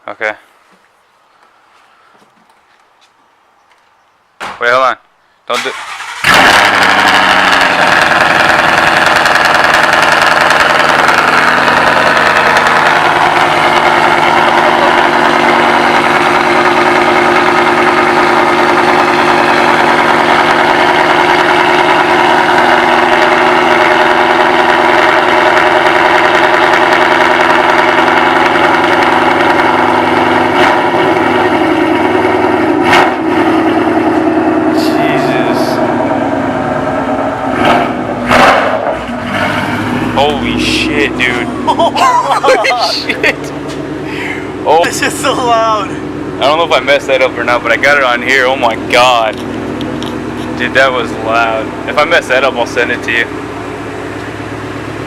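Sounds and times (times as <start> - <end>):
loud car engine fast idle: 5.7 - 38.1, 39.3 - 55.0.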